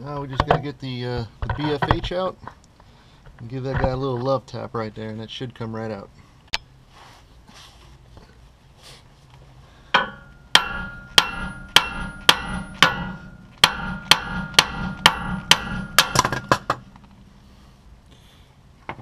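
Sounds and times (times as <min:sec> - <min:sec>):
hammer striking steel bolt: 0:10.0 - 0:17.0.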